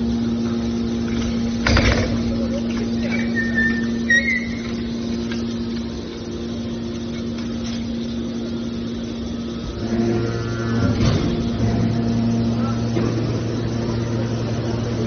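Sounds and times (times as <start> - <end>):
deeper machine drone: 0.0 - 15.0
hydraulic power unit humming: 0.0 - 15.0
high metallic squeal: 3.0 - 4.9.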